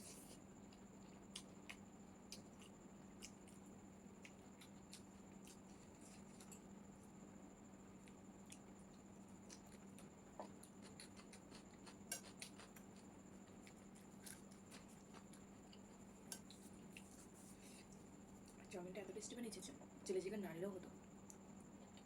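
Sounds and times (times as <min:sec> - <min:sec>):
faint steady hum: 0:00.0 - 0:22.0
person chewing noodles: 0:00.7 - 0:06.7, 0:08.0 - 0:18.6.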